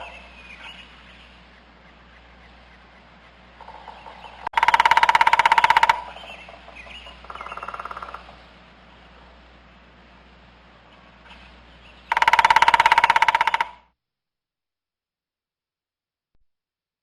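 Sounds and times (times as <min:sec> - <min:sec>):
small bird chirps: 0:00.0 - 0:08.3
low steady hum: 0:00.0 - 0:13.9
turkey gobbling: 0:02.0 - 0:08.3.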